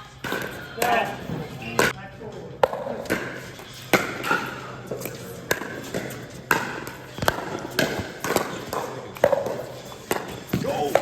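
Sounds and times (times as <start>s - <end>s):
paddles hitting plastic ball: 3.9s - 11.0s.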